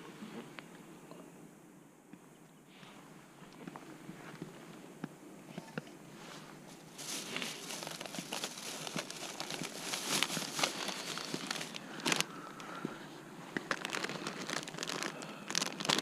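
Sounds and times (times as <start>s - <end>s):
crinkling and rustling: 5.5s - 16.0s.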